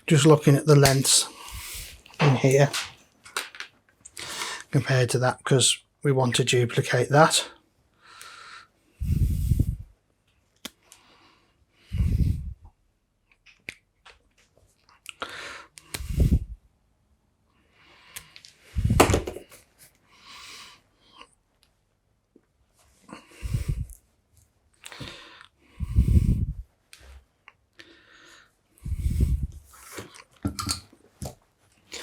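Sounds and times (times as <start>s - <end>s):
person breathing close to mic: 1.2s - 2.4s, 4.2s - 4.7s, 8.0s - 10.0s, 10.9s - 12.7s, 15.2s - 16.6s, 23.1s - 24.0s, 24.8s - 26.7s, 27.8s - 30.2s.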